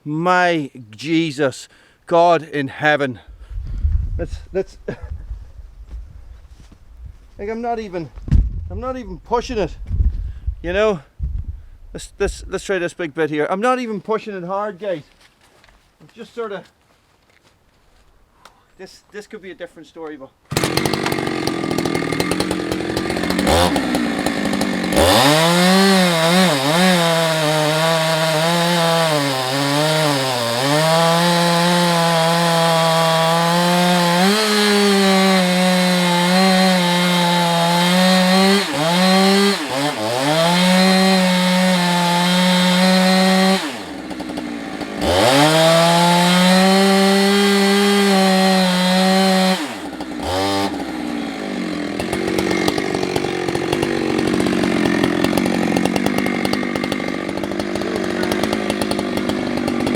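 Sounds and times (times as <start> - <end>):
chainsaw cutting log: 20.5 - 59.9.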